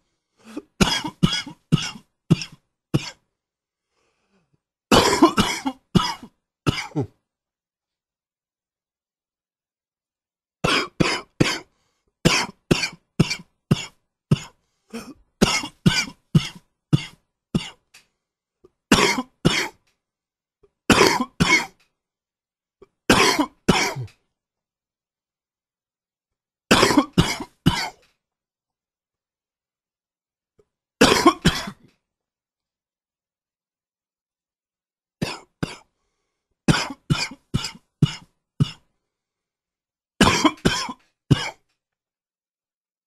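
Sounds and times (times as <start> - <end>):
man coughing: 0.4 - 3.2, 4.9 - 7.2, 10.6 - 11.7, 12.3 - 17.8, 18.9 - 19.8, 20.9 - 21.8, 23.1 - 24.2, 26.7 - 28.1, 31.0 - 31.9, 35.2 - 35.9, 36.7 - 38.9, 40.2 - 41.7.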